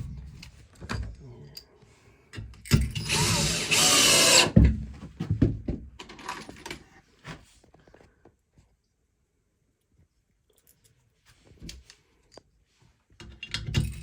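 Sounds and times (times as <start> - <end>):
knocks and clatter of handling: 0.0 - 1.6, 4.6 - 8.0, 13.1 - 14.0
power tool running: 2.9 - 4.6.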